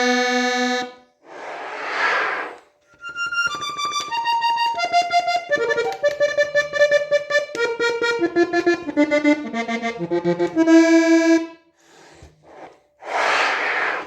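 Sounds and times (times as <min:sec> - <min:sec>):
button accordion melody: 0:00.0 - 0:00.9, 0:03.0 - 0:11.5.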